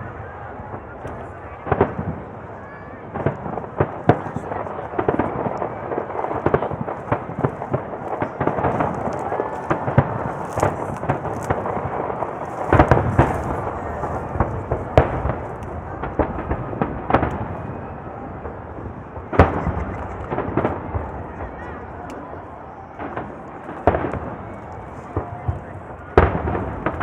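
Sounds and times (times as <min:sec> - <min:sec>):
fireworks crackling: 0:00.0 - 0:27.0
fireworks shells bursting: 0:06.2 - 0:16.5.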